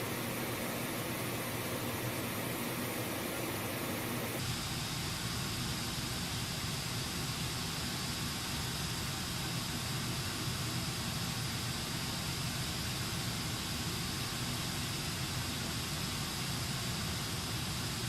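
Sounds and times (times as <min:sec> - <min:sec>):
pink noise through a speaker: 0:00.0 - 0:04.4.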